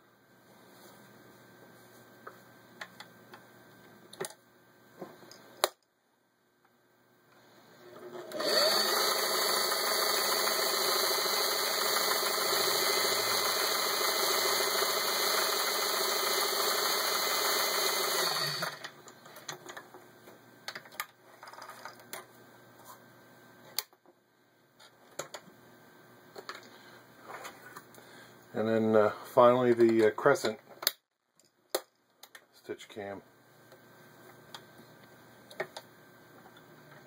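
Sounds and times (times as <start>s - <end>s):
sewing machine stitching: 7.9s - 18.9s.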